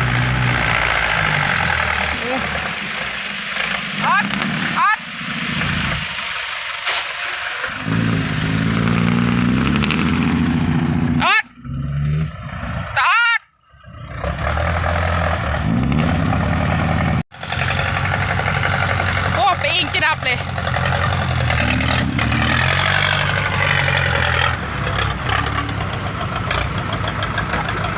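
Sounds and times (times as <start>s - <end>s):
vehicle engine revving: 0.0s - 13.0s, 13.7s - 27.9s.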